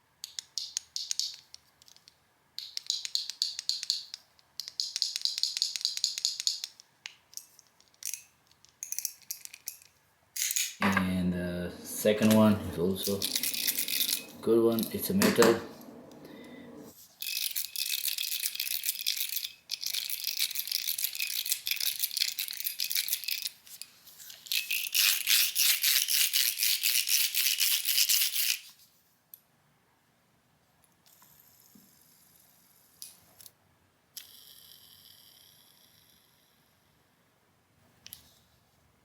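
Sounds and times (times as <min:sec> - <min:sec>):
metal fidget toy rattling: 0:02.6 - 0:10.8, 0:13.0 - 0:15.0, 0:17.2 - 0:28.6.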